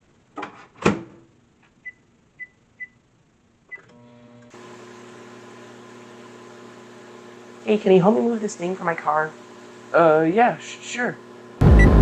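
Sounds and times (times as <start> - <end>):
microwave oven humming: 3.9 - 12.0.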